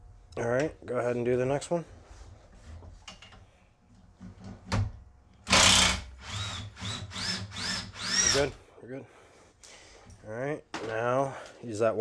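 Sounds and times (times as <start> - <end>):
power drill motor whine: 5.5 - 8.6.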